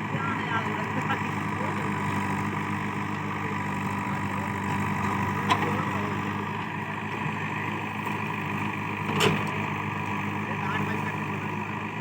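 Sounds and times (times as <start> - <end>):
diesel engine running: 0.0 - 12.0.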